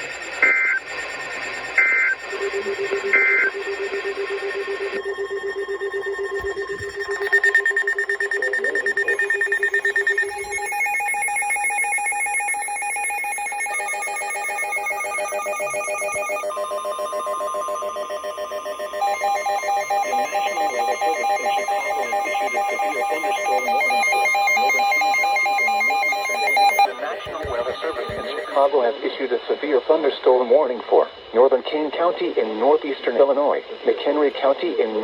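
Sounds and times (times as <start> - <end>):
fast-pulsing beeps: 0.0 - 28.7
overlapping electronic alert tones: 1.8 - 28.6
steady alert tone: 13.6 - 28.6.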